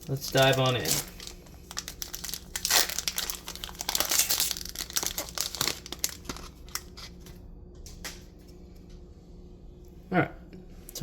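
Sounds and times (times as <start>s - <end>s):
wrapper crinkling and tearing: 0.0s - 7.4s.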